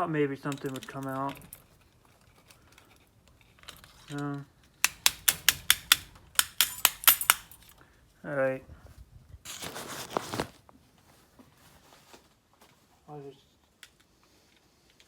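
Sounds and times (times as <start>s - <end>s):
metallic taps on padlock: 4.8s - 7.7s.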